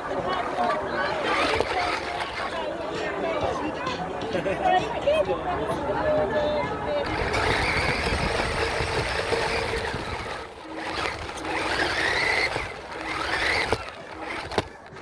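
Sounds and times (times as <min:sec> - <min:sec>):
toy truck motor whirring: 0:00.2 - 0:02.8, 0:07.0 - 0:15.0.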